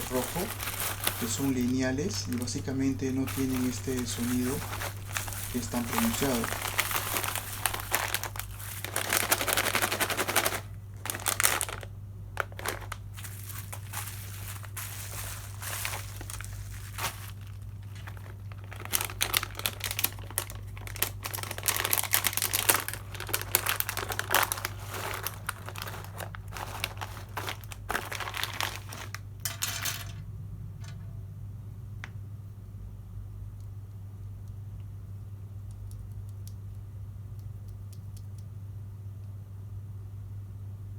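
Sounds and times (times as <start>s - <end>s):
plastic packaging crinkling: 0.0s - 30.2s
steady low hum: 0.0s - 40.9s
small clicks: 35.6s - 38.5s.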